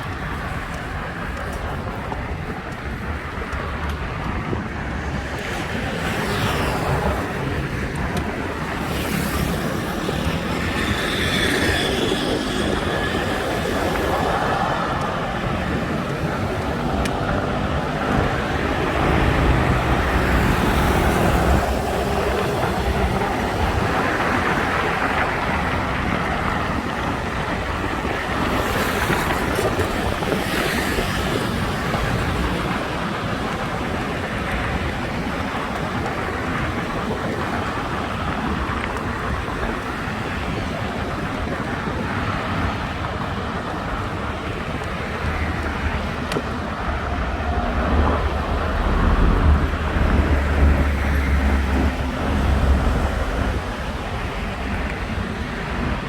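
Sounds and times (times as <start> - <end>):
passing cars: 0.0 - 56.0
wind rumbling on microphone: 0.0 - 56.0.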